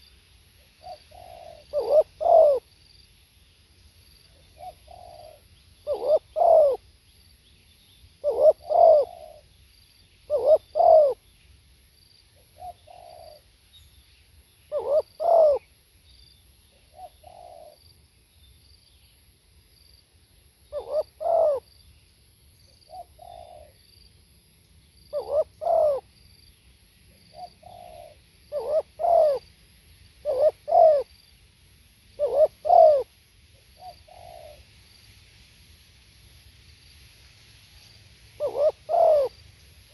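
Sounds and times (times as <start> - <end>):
dove cooing: 0.8 - 2.7, 4.4 - 6.8, 8.2 - 9.5, 10.3 - 11.2, 12.6 - 13.4, 14.7 - 15.6, 16.9 - 17.8, 20.7 - 21.6, 22.9 - 23.8, 25.1 - 26.1, 27.3 - 29.5, 30.2 - 31.1, 32.2 - 33.1, 33.8 - 34.7, 38.4 - 39.4.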